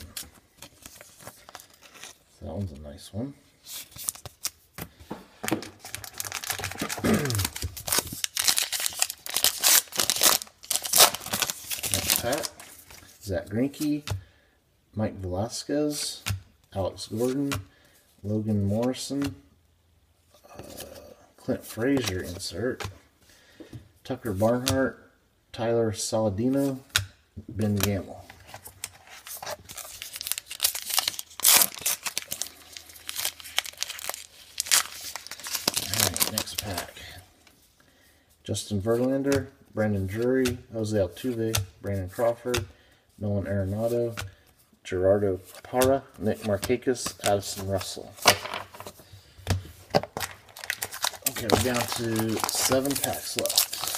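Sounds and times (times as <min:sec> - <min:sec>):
foil wrapper tearing and crumpling: 0:05.8 - 0:12.6, 0:29.6 - 0:36.9, 0:50.2 - 0:53.9.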